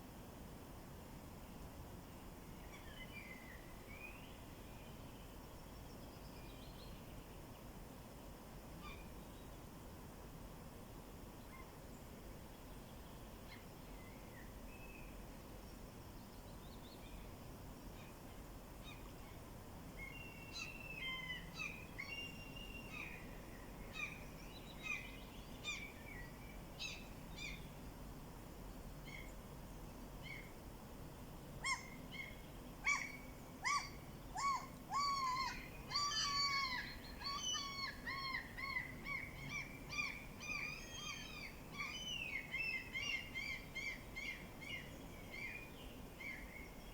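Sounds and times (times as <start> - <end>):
faint background hiss: 0.0 - 46.9
songbirds singing: 31.7 - 46.9.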